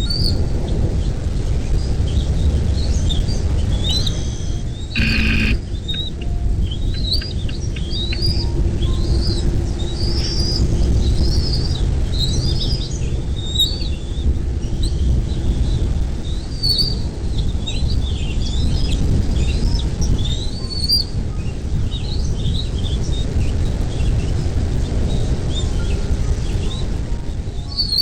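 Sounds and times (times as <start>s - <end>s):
birds chirping: 3.9s - 6.4s
harsh bird call: 5.0s - 6.1s.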